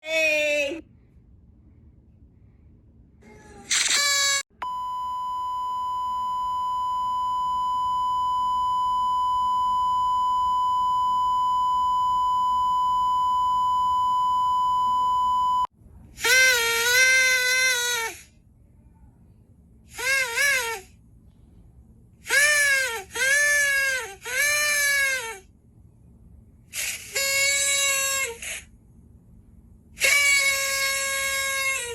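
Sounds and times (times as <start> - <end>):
steady electronic beep: 4.5 - 15.7
party horn blower blasts: 16.2 - 18.2, 19.9 - 20.9, 26.8 - 28.6.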